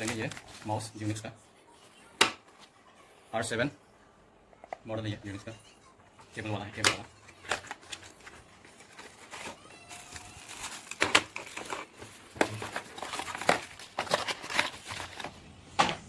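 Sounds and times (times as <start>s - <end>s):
packaging crinkling and rustling: 0.0s - 1.3s, 6.7s - 15.4s.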